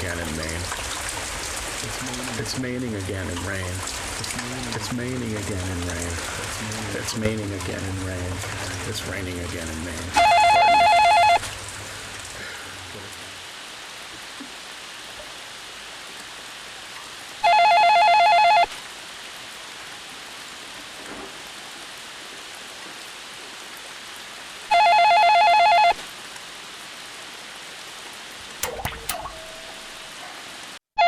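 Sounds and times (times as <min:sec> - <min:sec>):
rain hiss: 0:00.0 - 0:17.7, 0:18.6 - 0:24.8, 0:25.8 - 0:30.8
telephone ringing: 0:10.2 - 0:11.4, 0:17.4 - 0:18.7, 0:24.7 - 0:26.0.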